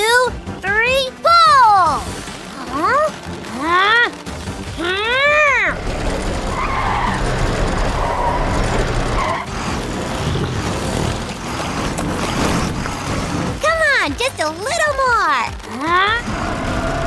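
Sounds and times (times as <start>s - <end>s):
cartoon engines straining: 1.5s - 15.0s
wheels spinning and skidding: 1.6s - 17.0s.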